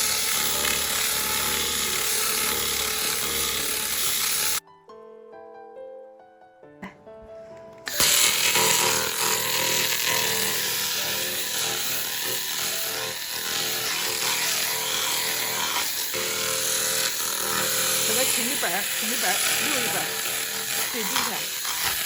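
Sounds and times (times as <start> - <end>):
laser cleaning head hissing: 7.9 - 22.0.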